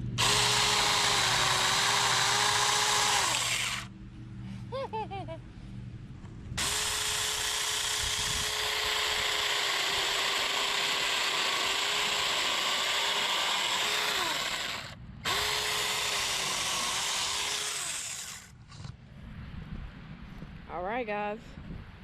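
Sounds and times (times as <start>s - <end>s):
electric chainsaw cutting log: 0.0s - 3.9s, 6.6s - 18.5s.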